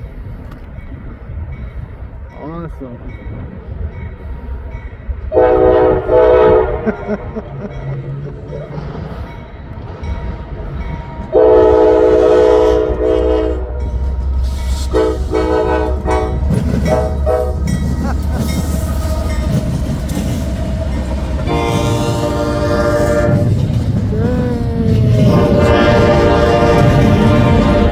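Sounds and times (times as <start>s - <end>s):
train rumbling by: 0.0s - 27.9s
locomotive air horn blasts: 5.3s - 6.8s, 11.3s - 14.0s, 14.8s - 17.6s, 21.4s - 23.6s, 24.9s - 27.9s.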